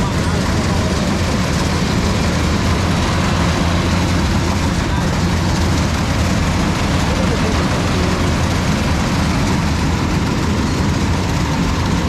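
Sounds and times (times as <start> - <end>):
large engine running: 0.0 - 12.0.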